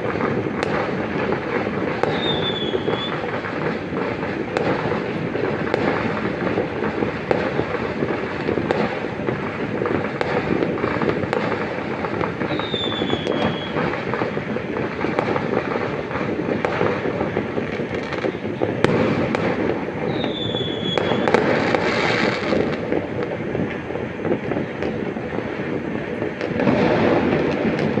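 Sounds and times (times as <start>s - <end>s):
falling firework whistles: 0.0s - 28.0s
fireworks crackling and banging: 0.0s - 28.0s.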